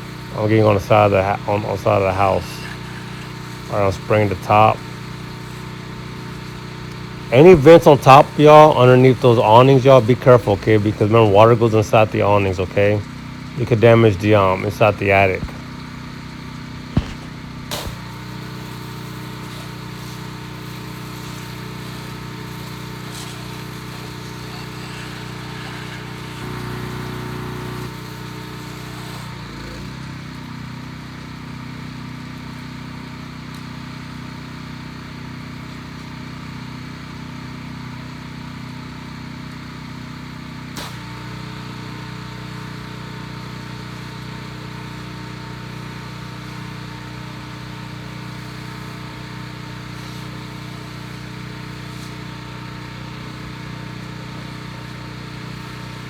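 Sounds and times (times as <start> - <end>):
water hissing from spray wand: 0.0 - 10.1, 14.4 - 29.4, 47.6 - 56.0
pressure washer engine running: 0.0 - 56.0.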